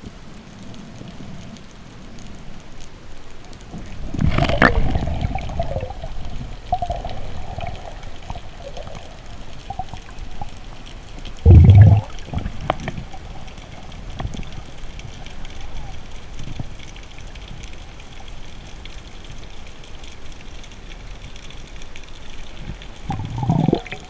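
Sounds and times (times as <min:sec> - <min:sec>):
water gurgling and rushing: 0:03.7 - 0:15.9, 0:22.5 - 0:24.0.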